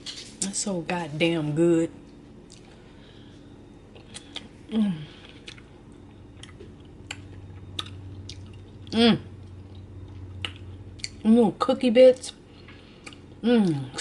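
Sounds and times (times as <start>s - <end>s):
wet mouth eating sounds: 5.2s - 5.7s, 6.3s - 11.2s, 12.2s - 14.0s.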